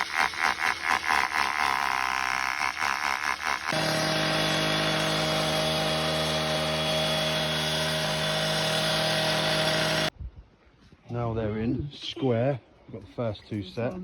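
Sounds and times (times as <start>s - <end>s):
power tool motor whining: 0.0s - 10.1s.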